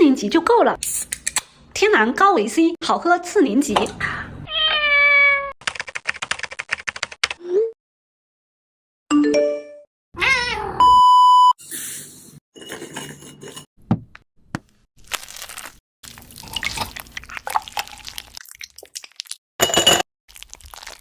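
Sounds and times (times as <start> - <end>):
cat meowing: 4.5 - 5.6, 10.2 - 10.9
electronic beep: 10.8 - 11.6.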